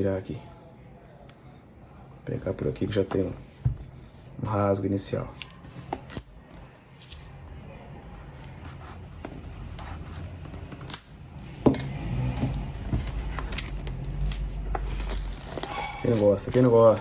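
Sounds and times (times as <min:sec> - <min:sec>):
low handling rumble: 0:11.4 - 0:17.0
scraping and crinkling: 0:11.7 - 0:17.0.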